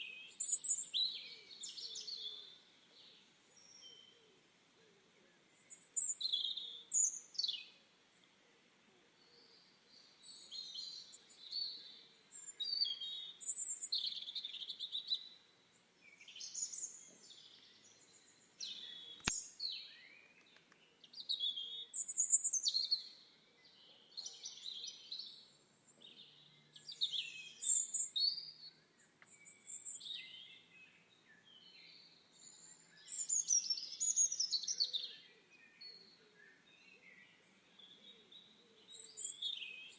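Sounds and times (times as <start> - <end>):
songbirds singing: 0.0 - 39.9
short click: 19.2 - 19.5.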